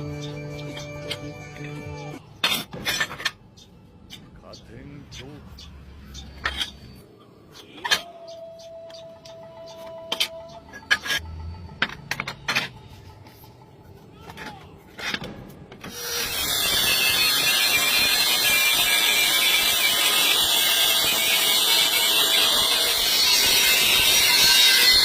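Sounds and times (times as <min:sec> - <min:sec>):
metal being handled: 0:02.3 - 0:04.6, 0:06.1 - 0:16.0
power tool grinding metal: 0:15.9 - 0:25.0.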